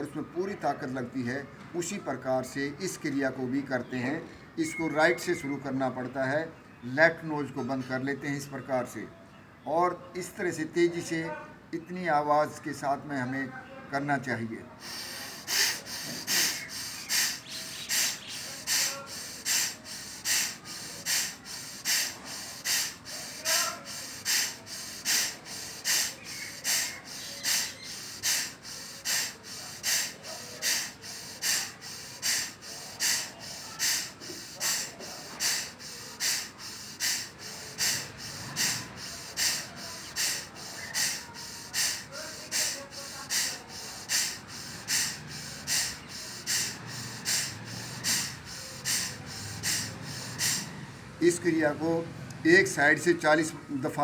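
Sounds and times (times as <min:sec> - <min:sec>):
man's forceful nasal exhalations: 0:14.8 - 0:51.1.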